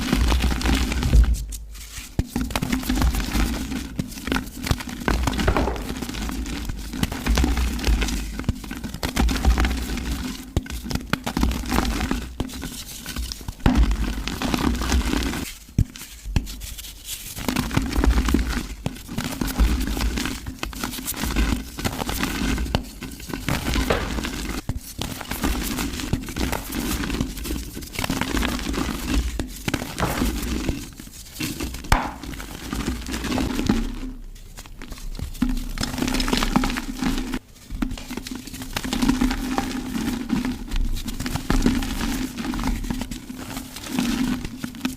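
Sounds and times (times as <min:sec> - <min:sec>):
mud crunching and crumbling: 0:05.0 - 0:08.0, 0:23.4 - 0:30.9, 0:31.6 - 0:33.9.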